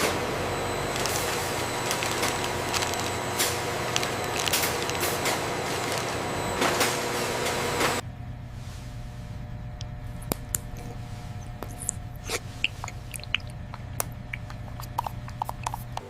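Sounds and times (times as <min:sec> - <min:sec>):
factory machinery hum: 0:00.0 - 0:16.0.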